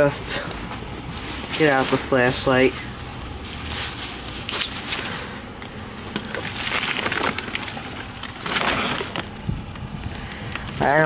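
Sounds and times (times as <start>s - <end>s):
plastic bag crinkling: 6.0s - 11.0s.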